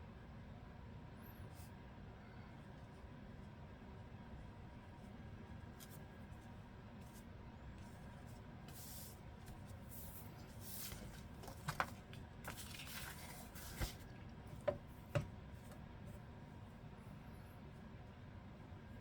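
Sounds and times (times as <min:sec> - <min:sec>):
faint brushing rustles: 0:05.8 - 0:14.1.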